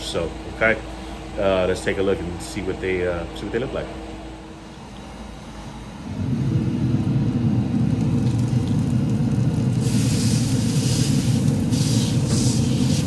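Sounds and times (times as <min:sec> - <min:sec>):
steady low rumble: 0:05.4 - 0:13.0.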